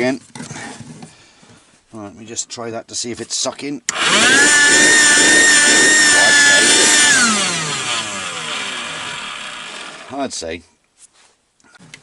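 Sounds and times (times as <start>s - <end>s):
vacuum cleaner motor whining: 3.9s - 10.2s.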